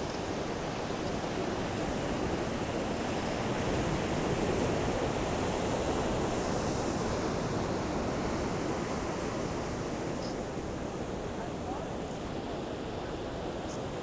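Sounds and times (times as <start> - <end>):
ocean surf breaking on shore: 0.0 - 14.0.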